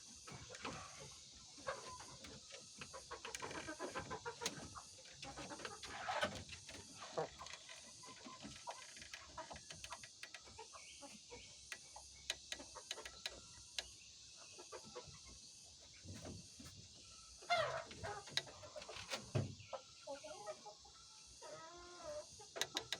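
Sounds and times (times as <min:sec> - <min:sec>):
hens clucking: 0:00.2 - 0:22.9
hens clicking and tapping: 0:00.3 - 0:10.7, 0:11.3 - 0:14.0, 0:17.5 - 0:19.5, 0:22.5 - 0:22.9.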